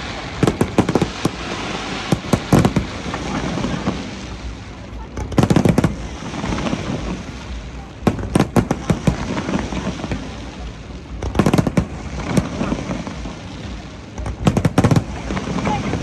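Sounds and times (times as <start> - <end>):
crowd noise: 0.0 - 16.0
fireworks crackling bangs: 0.0 - 16.0.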